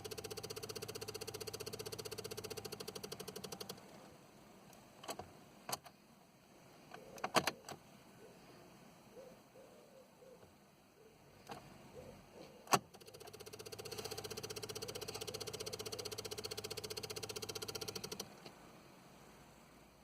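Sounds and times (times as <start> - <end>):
car starter cranking: 0.0 - 3.8, 12.7 - 18.4.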